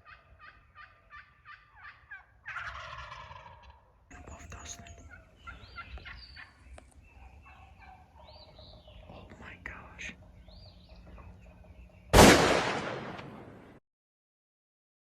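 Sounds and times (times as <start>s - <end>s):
turkey gobbling: 0.0s - 4.0s, 5.0s - 9.0s
soft bird calls: 0.0s - 13.6s.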